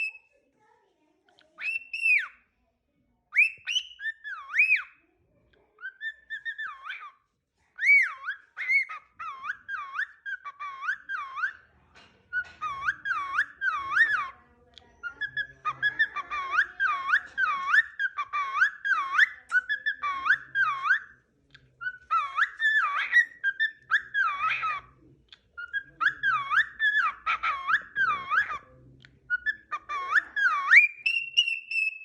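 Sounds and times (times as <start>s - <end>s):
cockatiel whistling a tune: 0.0s - 0.3s, 1.6s - 2.4s, 3.3s - 5.0s, 5.8s - 7.2s, 7.8s - 11.6s, 12.3s - 14.4s, 15.0s - 21.1s, 21.8s - 24.9s, 25.6s - 28.6s, 29.3s - 32.0s.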